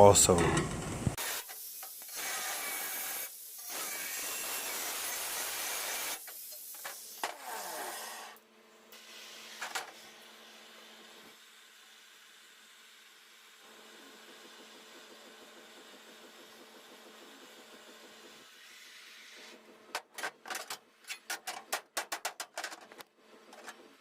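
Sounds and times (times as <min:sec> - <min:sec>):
power tool cutting sheet metal: 0:01.1 - 0:08.4, 0:09.0 - 0:10.6.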